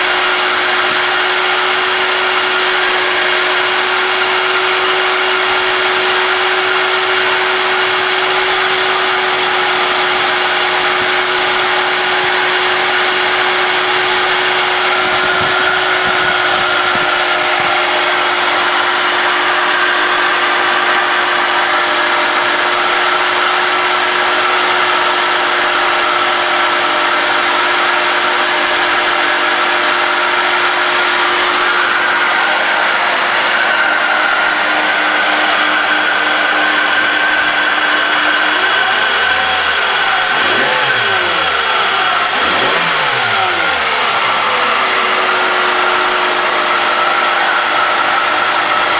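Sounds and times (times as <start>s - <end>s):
car engine idling with whirring whine: 0.0s - 48.9s
higher-pitched whine: 31.2s - 47.4s.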